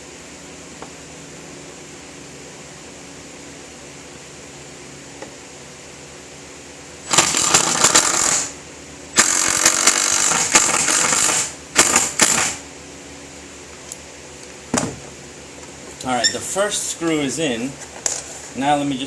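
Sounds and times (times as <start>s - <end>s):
power drill driving a screw: 7.1s - 8.6s, 9.2s - 12.6s.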